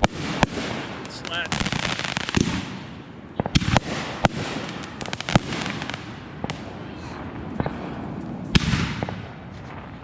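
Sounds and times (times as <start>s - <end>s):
firework bangs: 0.0s - 10.0s.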